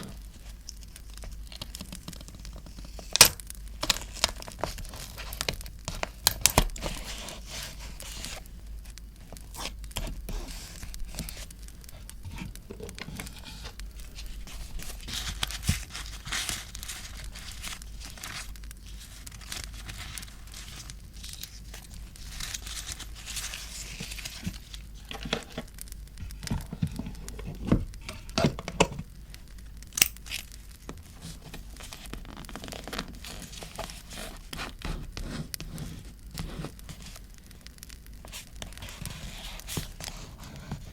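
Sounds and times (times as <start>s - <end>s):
paper rustling: 0.0s - 28.6s
paper tearing and crinkling: 9.2s - 28.4s, 30.0s - 37.2s.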